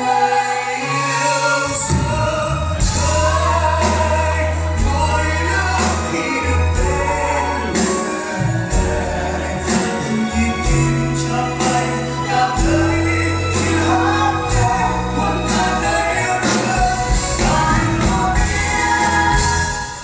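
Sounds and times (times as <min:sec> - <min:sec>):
bass notes: 0:01.7 - 0:20.0.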